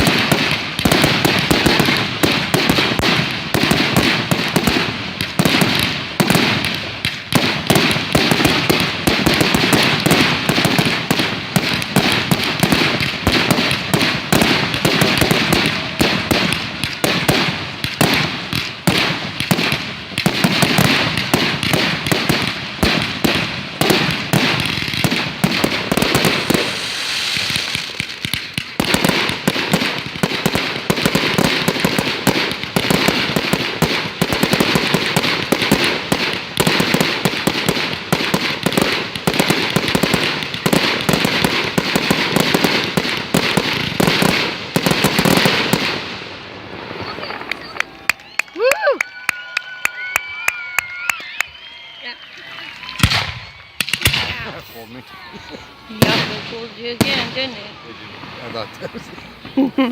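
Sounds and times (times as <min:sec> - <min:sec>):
fireworks bangs and crackles: 0:00.0 - 0:59.9.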